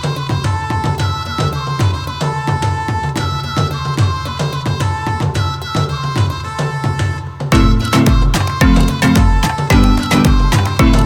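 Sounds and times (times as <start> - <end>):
hand drum rhythm: 0.0 - 11.0
held melodic notes: 7.5 - 11.0.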